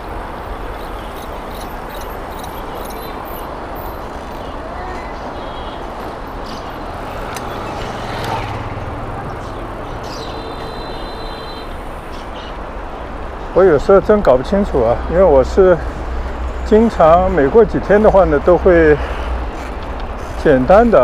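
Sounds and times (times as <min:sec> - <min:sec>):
road traffic noise: 0:00.0 - 0:21.0
motor vehicle passing: 0:05.9 - 0:10.8.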